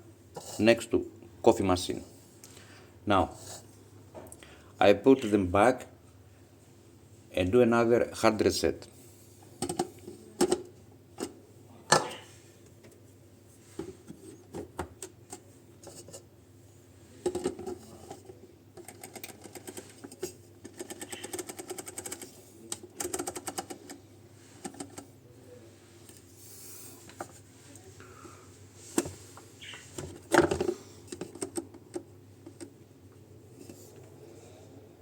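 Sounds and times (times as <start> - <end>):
plastic parts clicking: 17.3 - 24.0.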